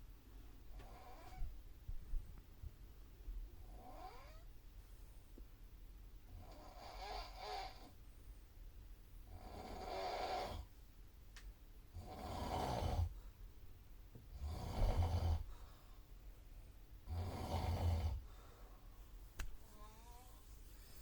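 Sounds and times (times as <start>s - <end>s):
person snoring heavily: 12.0s - 13.1s, 17.1s - 18.2s.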